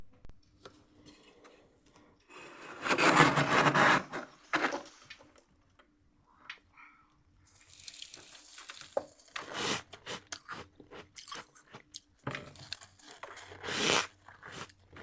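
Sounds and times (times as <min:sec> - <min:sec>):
freezer frost crunching: 0:07.6 - 0:15.0.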